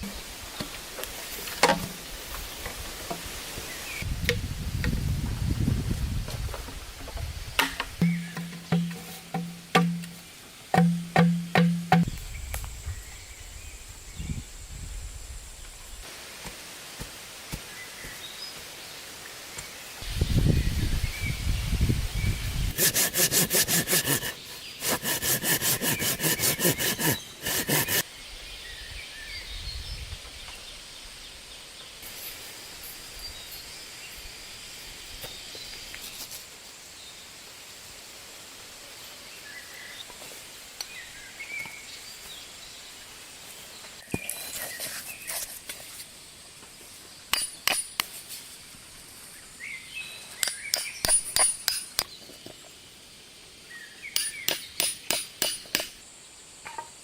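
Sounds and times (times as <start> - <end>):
sharp knocks and clicks: 7.6 - 10.2, 10.8 - 12.1
hand saw cutting wood: 22.7 - 28.0.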